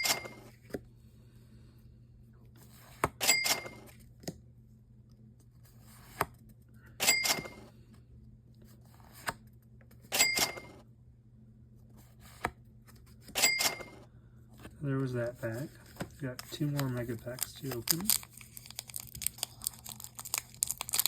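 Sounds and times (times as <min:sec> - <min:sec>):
cards tapping: 0:15.5 - 0:19.2.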